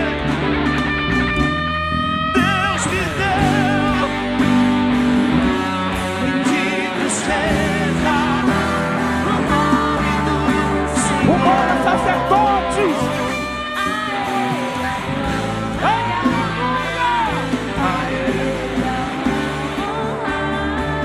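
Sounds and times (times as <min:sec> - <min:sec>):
worship music with guitar: 0:00.0 - 0:21.0
person singing with vibrato: 0:02.3 - 0:21.0.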